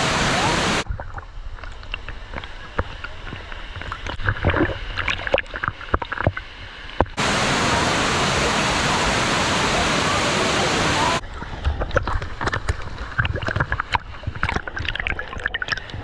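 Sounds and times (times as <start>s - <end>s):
waterfall rushing: 0.0s - 0.8s, 7.2s - 11.2s.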